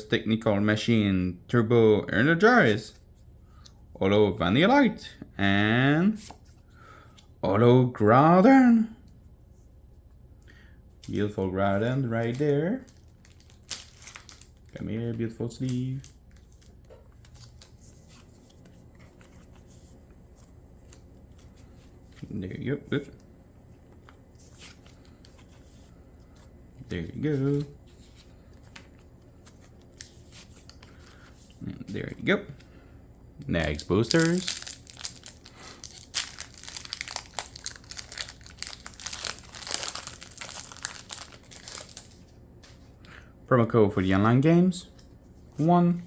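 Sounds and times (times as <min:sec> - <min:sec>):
foil wrapper crinkling: 0:12.0 - 0:19.6, 0:33.5 - 0:42.4.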